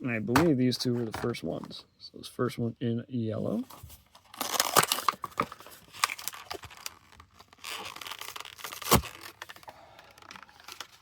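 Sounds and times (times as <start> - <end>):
plastic packaging crinkling: 4.2 - 11.0
card tearing: 4.3 - 9.7.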